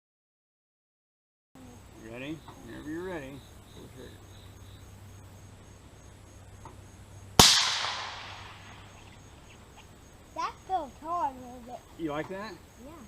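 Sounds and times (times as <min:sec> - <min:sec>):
rifle shot: 0:07.4 - 0:09.0.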